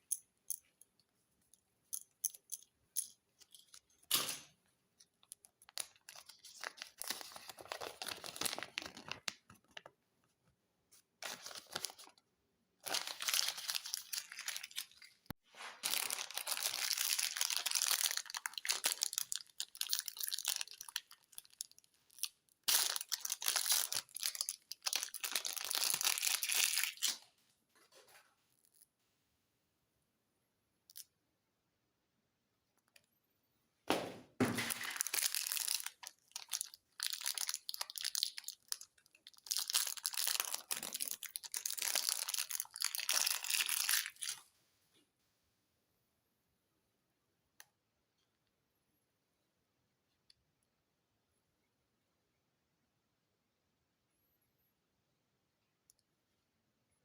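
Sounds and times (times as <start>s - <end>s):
plastic wrappers crinkling: 5.1s - 9.9s, 11.2s - 12.2s, 12.8s - 27.2s, 34.6s - 44.4s.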